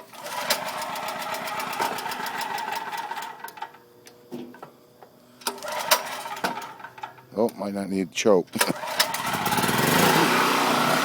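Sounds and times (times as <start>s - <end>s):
generator engine pull-started: 0.0s - 3.8s, 5.4s - 7.3s, 8.5s - 11.0s.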